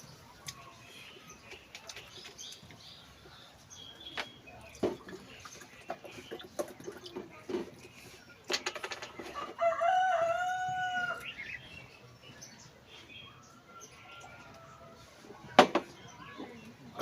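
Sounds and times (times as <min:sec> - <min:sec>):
rooster crowing: 0:09.4 - 0:11.2.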